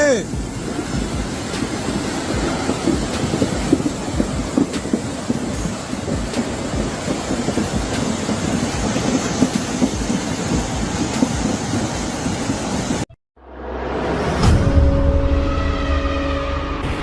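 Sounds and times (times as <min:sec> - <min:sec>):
heavy rain: 0:00.0 - 0:13.1
strong wind: 0:00.0 - 0:13.1
wind gusts thumping on microphone: 0:00.2 - 0:13.0.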